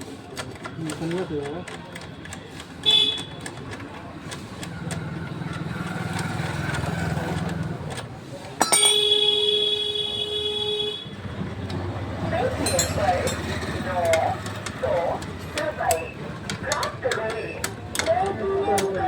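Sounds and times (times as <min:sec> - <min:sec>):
car horn blast: 0:08.9 - 0:11.2.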